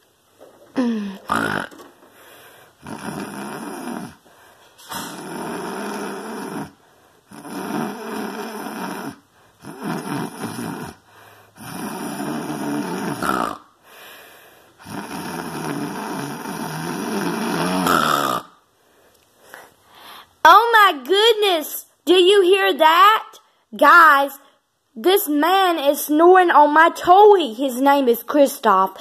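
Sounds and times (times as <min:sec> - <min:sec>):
person snoring loudly: 0:00.8 - 0:04.3, 0:04.9 - 0:14.1, 0:14.8 - 0:18.6.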